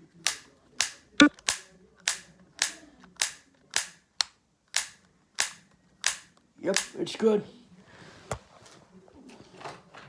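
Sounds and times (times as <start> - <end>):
toy clip gate snapping: 0.2 - 7.0.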